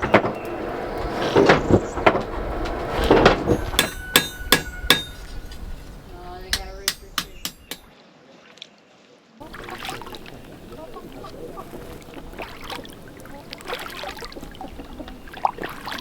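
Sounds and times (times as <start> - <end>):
hammer knocking dully: 3.5 - 5.6, 6.5 - 7.9
hammer striking metal with ringing: 3.5 - 5.8, 6.5 - 7.9.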